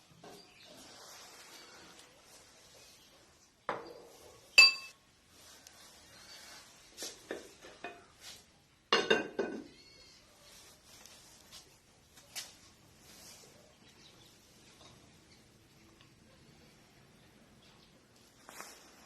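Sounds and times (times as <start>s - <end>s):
spoon clinking against a bowl: 4.6s - 5.0s.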